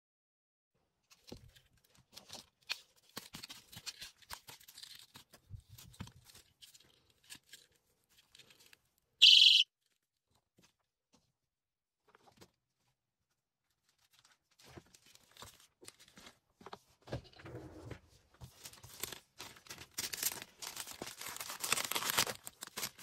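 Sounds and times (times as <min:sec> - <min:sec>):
shrill safety alarm: 0:09.2 - 0:09.6
packing rustles: 0:18.4 - 0:23.0.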